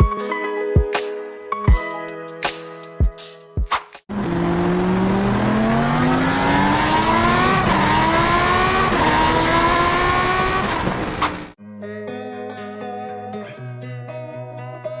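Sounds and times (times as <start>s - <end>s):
car engine accelerating: 4.1s - 11.6s.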